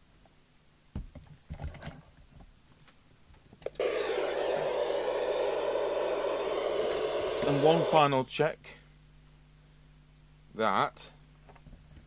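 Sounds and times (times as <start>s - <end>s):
radio static hiss: 3.8s - 8.3s.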